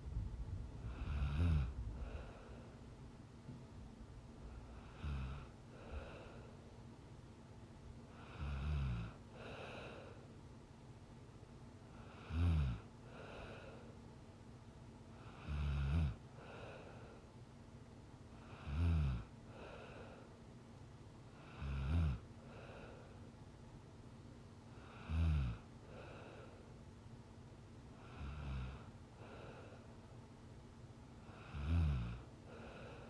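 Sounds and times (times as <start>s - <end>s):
soft breath: 0.0s - 3.0s, 4.3s - 6.9s, 8.0s - 10.5s, 11.9s - 14.3s, 16.2s - 20.6s, 22.4s - 23.6s, 24.6s - 27.0s, 27.9s - 30.6s, 31.2s - 33.0s
woman snoring: 0.9s - 2.4s, 4.7s - 6.4s, 8.2s - 10.1s, 12.0s - 13.8s, 15.2s - 17.0s, 18.4s - 20.0s, 21.4s - 22.9s, 24.8s - 26.3s, 28.0s - 29.8s, 31.3s - 33.0s.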